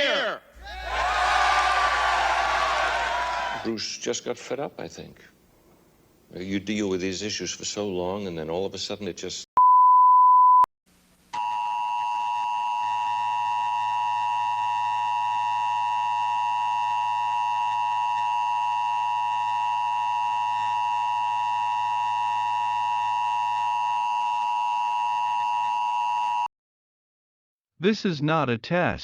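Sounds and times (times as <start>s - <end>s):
single-pitch beep: 9.6s - 10.7s
harsh two-tone alarm: 11.4s - 26.5s.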